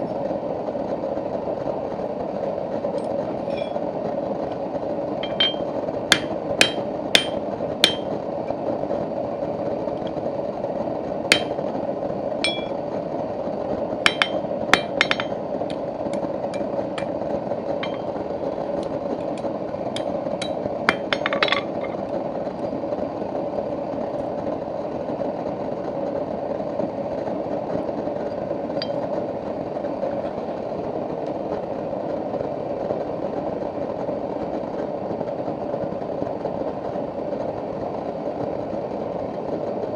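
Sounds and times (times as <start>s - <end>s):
forge roaring: 1.0s - 24.0s
hammer strikes on steel: 5.2s - 8.1s, 11.3s - 11.6s, 12.4s - 12.8s, 14.1s - 15.4s, 17.8s - 18.1s, 20.0s - 21.7s.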